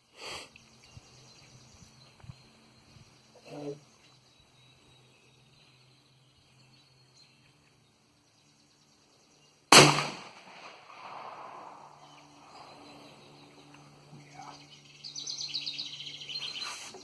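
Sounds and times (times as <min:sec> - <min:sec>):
rifle shot with echo: 0:09.7 - 0:12.0.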